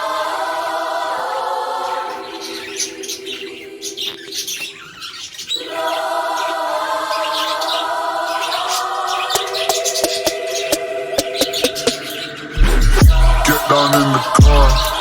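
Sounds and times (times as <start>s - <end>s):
choir-like music chord: 0.0s - 4.5s, 5.6s - 15.0s
budgerigars chirping: 2.6s - 5.6s.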